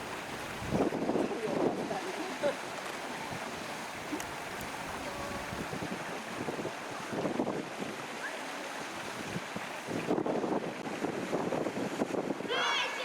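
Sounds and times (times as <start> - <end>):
wind buffeting microphone: 0.0 - 8.2, 9.0 - 12.7.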